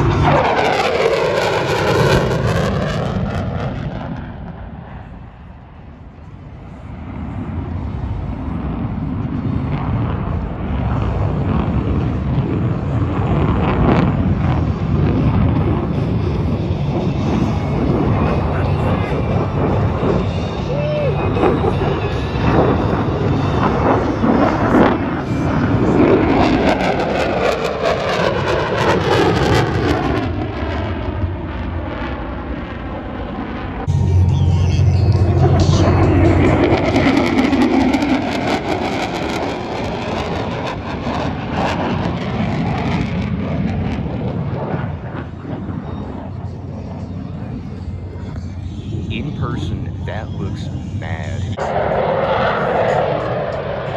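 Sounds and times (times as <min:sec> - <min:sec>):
plane flying over: 0:00.0 - 0:53.9
steady low hum: 0:04.5 - 0:25.9, 0:33.9 - 0:37.7, 0:46.2 - 0:51.9.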